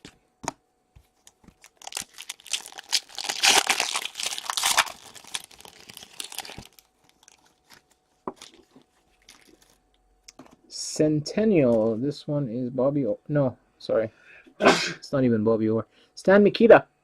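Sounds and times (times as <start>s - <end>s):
foil wrapper tearing and crinkling: 1.2s - 9.9s.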